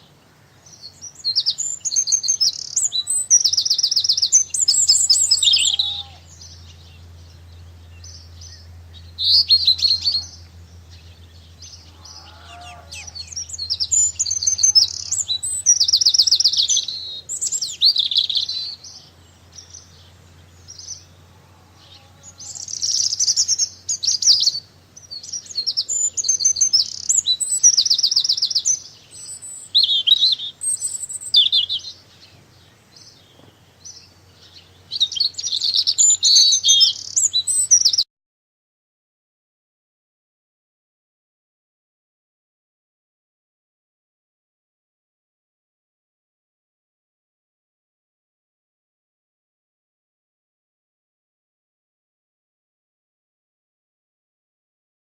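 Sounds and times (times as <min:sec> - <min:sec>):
faint low hum: 0:00.0 - 0:37.8
small birds chirping: 0:00.0 - 0:38.1.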